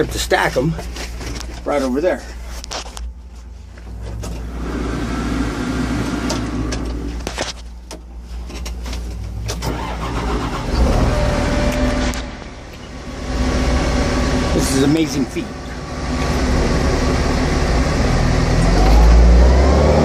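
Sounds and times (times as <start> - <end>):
forklift engine running: 3.8 - 20.0.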